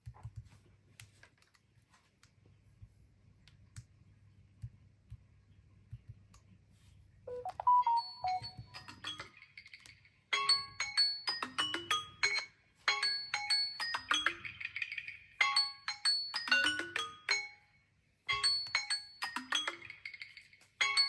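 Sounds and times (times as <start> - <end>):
faint clicks and taps: 0.0 - 6.6
phone ringtone melody: 7.3 - 8.8.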